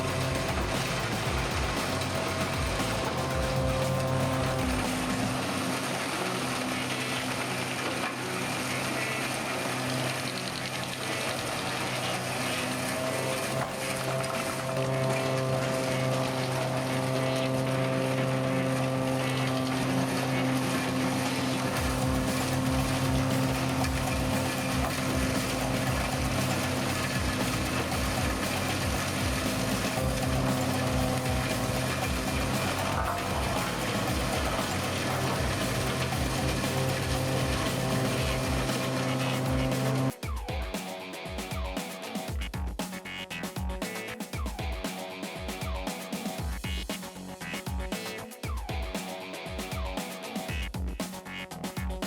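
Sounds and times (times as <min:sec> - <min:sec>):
heavy machine engine running: 0:00.0 - 0:40.1.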